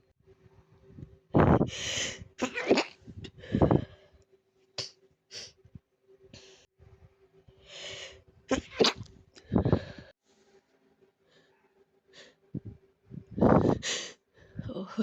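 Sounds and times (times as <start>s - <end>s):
person sneezing: 8.5s - 9.0s
sharp catching breaths: 9.4s - 10.1s.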